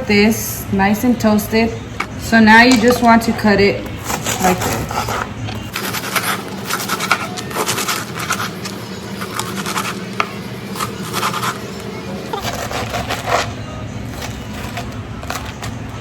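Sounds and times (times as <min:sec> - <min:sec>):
knife sawing through crusty bread: 0:04.0 - 0:15.8.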